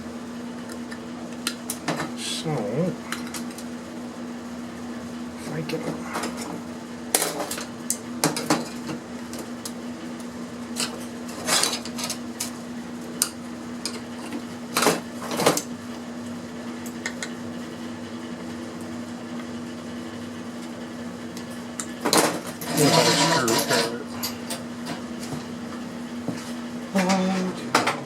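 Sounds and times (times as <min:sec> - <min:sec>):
steady background hum: 0:00.0 - 0:28.0.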